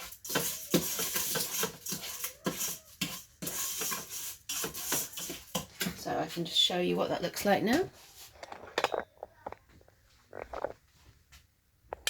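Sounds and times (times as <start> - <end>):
spoon scraping a pot: 0.0 - 9.6.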